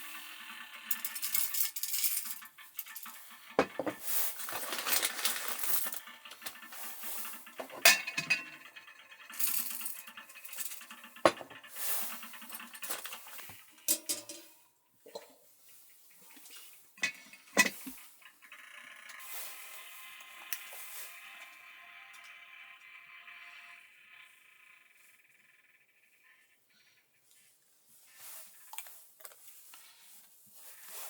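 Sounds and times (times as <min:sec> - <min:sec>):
dishes and cutlery clinking: 0:07.6 - 0:08.6, 0:10.6 - 0:11.6, 0:13.9 - 0:15.4.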